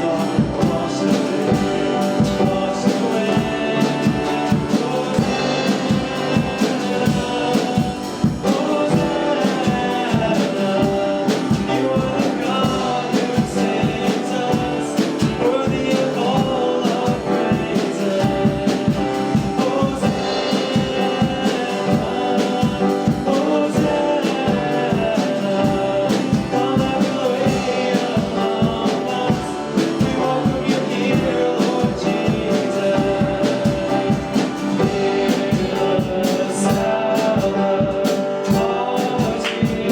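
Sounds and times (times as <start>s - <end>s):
worship band playing with singing: 0.0s - 39.9s.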